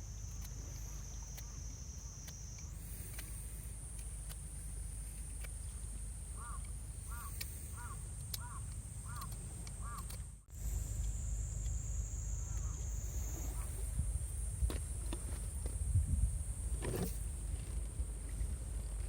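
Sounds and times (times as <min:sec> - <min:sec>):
steady high-pitched hum: 0:00.0 - 0:19.0
short bird calls: 0:06.4 - 0:10.2, 0:12.4 - 0:13.8.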